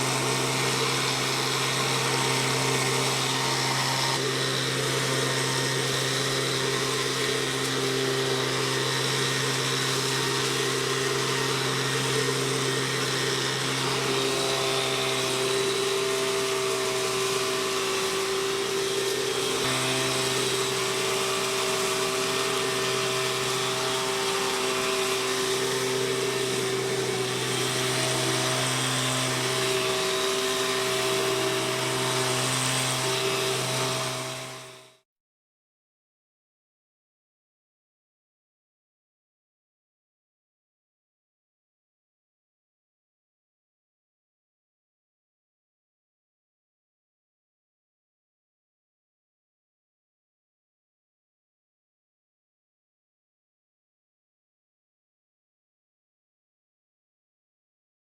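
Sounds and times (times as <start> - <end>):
blower engine droning: 0.0 - 34.8.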